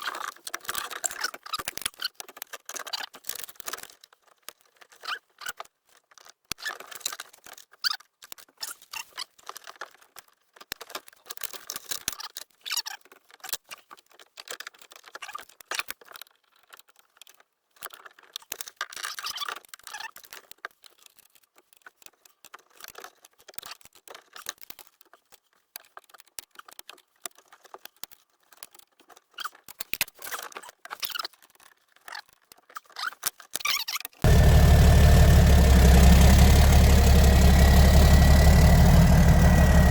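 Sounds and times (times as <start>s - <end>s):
loud steady running sound: 34.3s - 39.9s.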